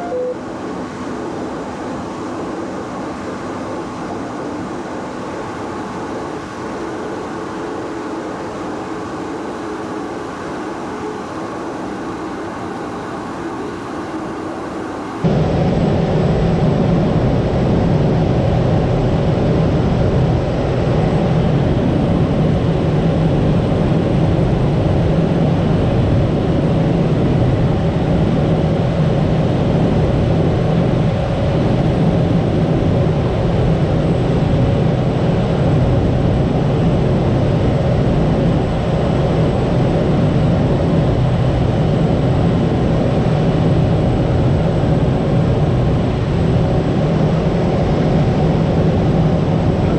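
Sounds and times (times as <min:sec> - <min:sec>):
high-pitched whine: 0:00.0 - 0:16.5
turboprop engine drone: 0:00.0 - 0:49.9.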